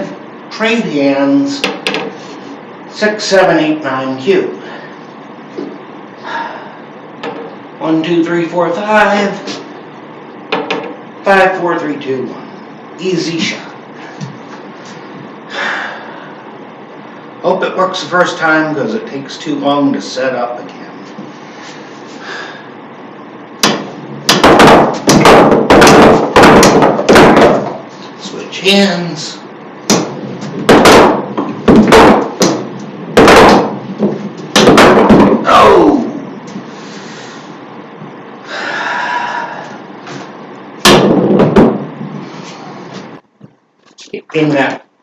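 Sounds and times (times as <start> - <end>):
pool balls knocking: 1.6 - 2.2, 7.2 - 7.5, 10.5 - 11.0, 23.6 - 27.8, 29.9 - 35.5, 40.8 - 42.0.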